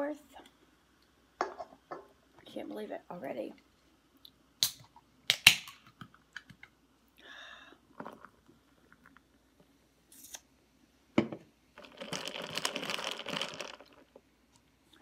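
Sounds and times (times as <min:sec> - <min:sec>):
packaging crinkling: 0:11.8 - 0:14.1.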